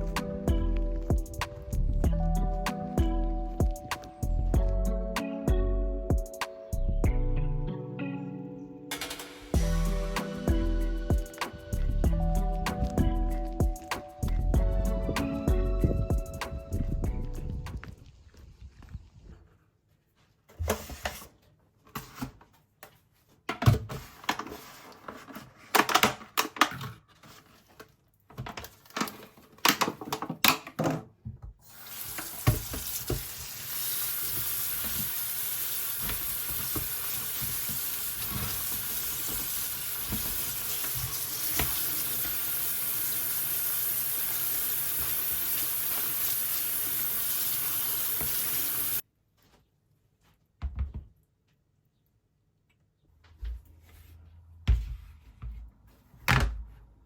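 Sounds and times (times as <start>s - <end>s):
items knocking and clattering: 23.4s - 31.6s
tap water running into sink: 31.6s - 49.0s.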